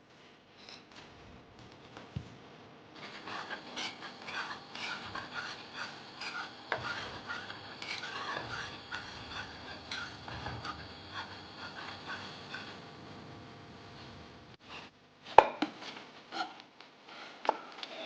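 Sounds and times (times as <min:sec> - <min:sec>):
utensil scraping: 0:03.0 - 0:13.3.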